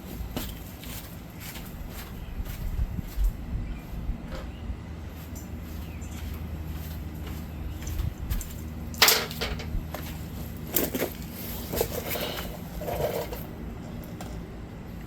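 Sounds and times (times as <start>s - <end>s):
steady low hum: 0.0s - 15.0s
small parts rattling: 9.0s - 9.7s.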